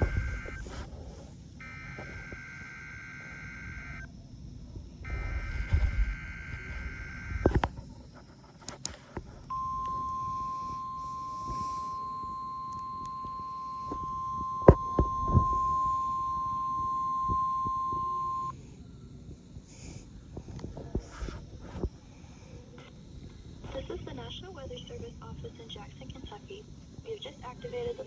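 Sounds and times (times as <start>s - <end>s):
steady warning alarm tone: 0.0s - 4.2s, 5.0s - 8.2s, 9.3s - 18.6s.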